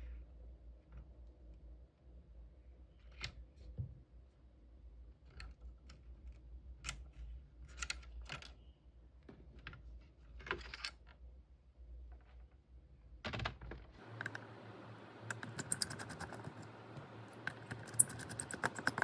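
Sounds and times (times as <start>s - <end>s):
hand tools clicking on small parts: 15.3s - 16.7s, 17.4s - 19.0s.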